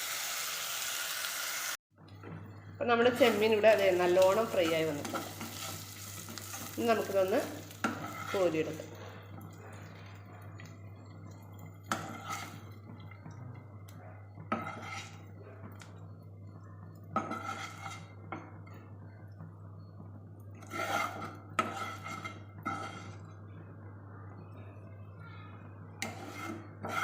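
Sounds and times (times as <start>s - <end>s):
utensil scraping a frying pan: 3.1s - 9.8s, 11.8s - 13.0s, 14.3s - 15.3s, 17.1s - 18.4s, 20.6s - 23.3s, 26.0s - 27.0s.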